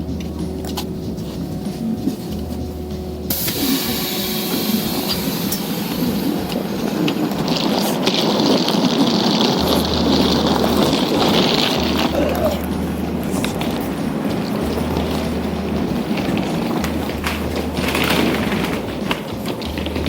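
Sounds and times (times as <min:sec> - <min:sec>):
vehicle rumble and road noise: 0:00.0 - 0:20.0.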